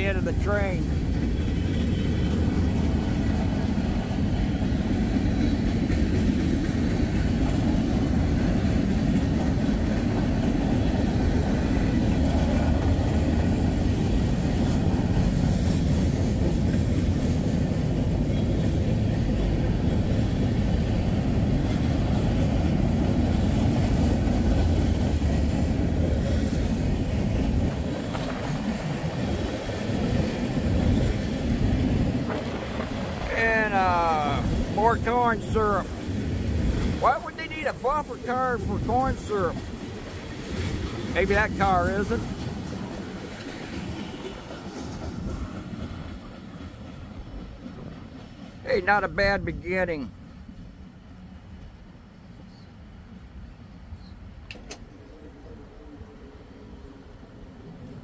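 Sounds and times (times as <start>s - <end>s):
train wheels rumbling on rails: 0.0s - 51.8s.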